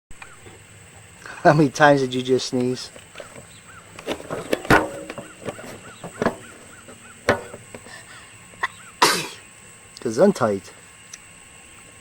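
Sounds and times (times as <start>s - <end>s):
person sneezing: 9.0s - 9.4s.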